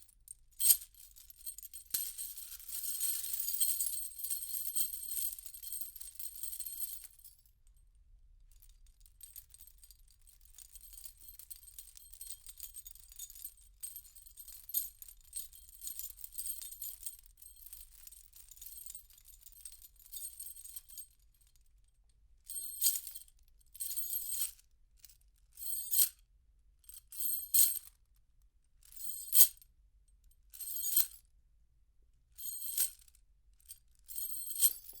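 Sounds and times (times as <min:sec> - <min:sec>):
metal chain rattling: 0:34.4 - 0:35.0.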